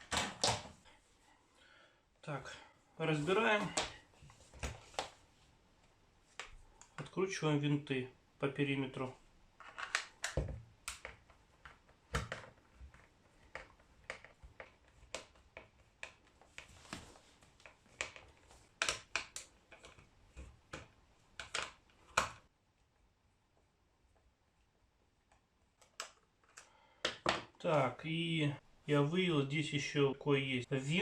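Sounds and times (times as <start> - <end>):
plastic tool being handled: 3.1 - 7.2, 9.6 - 22.5, 25.2 - 28.0.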